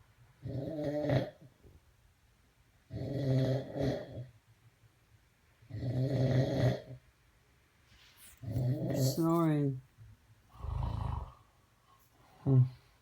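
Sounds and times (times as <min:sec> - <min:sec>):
man snoring: 0:02.9 - 0:04.2, 0:05.7 - 0:06.9, 0:08.5 - 0:09.2, 0:10.6 - 0:11.4.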